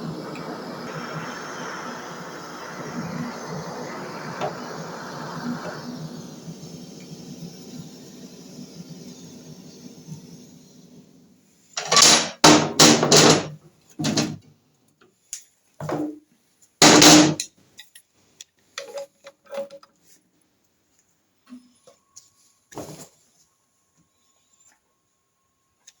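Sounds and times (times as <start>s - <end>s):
hammer striking metal: 16.8s - 17.4s.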